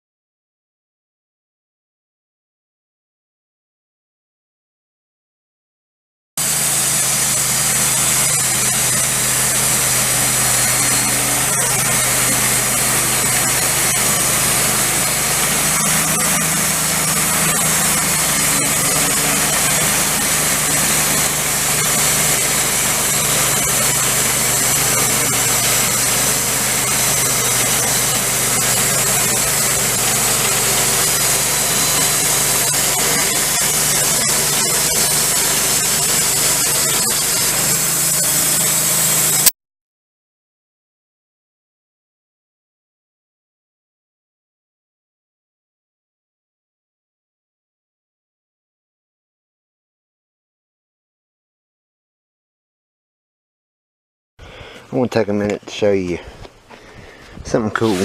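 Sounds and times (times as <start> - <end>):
band saw blade hissing through wood: 6.4 - 39.5, 57.6 - 58.0
sawmill engine humming: 6.4 - 39.5, 54.4 - 58.0.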